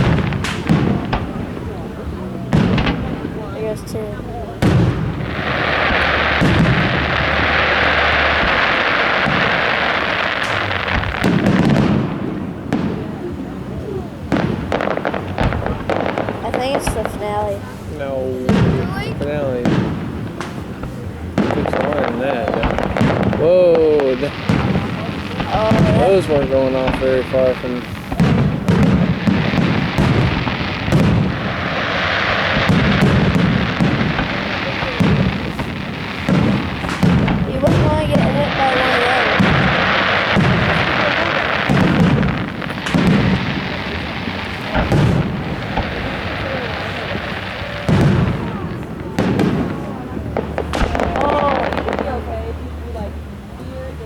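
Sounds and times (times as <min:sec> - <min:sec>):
booming firework bursts: 0:00.0 - 0:54.0
fireworks crackling hiss: 0:00.0 - 0:54.0
low rumbling: 0:00.0 - 0:54.0.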